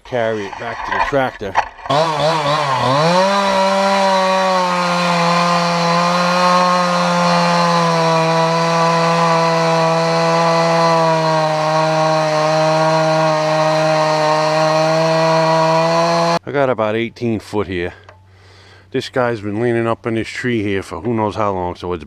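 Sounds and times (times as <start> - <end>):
chainsaw cutting log: 0.2 - 16.4.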